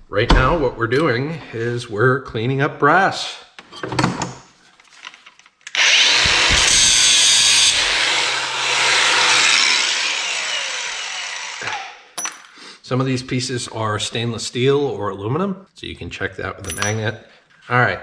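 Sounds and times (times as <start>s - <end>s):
power tool cutting brass: 5.7s - 12.1s.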